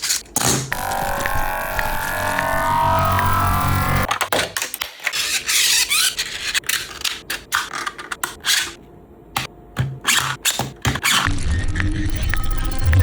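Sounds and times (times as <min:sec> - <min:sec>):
plastic parts scraping: 0:00.0 - 0:00.8, 0:04.0 - 0:08.8, 0:09.4 - 0:11.3.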